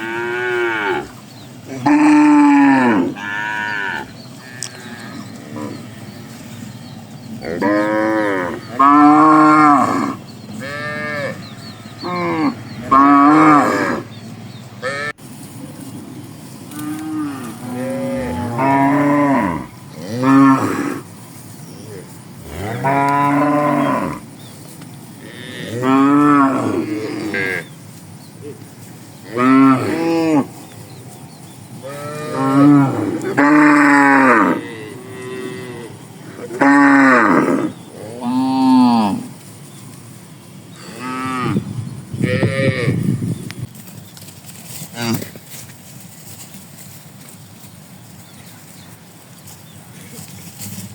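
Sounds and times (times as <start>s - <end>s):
cattle mooing: 0.0s - 5.9s, 7.4s - 14.1s, 14.8s - 15.2s, 16.7s - 21.1s, 21.9s - 24.2s, 25.2s - 27.7s, 29.3s - 30.6s, 31.8s - 39.3s, 40.8s - 41.6s, 42.2s - 43.0s.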